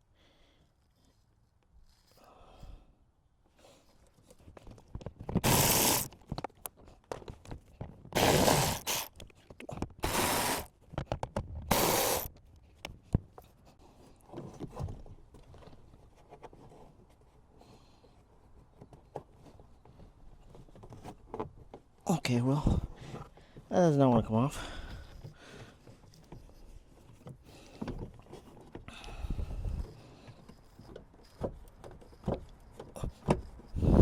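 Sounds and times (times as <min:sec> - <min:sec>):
ratchet wrench clicking: 0:05.4 - 0:06.1, 0:10.0 - 0:10.7, 0:11.7 - 0:12.3.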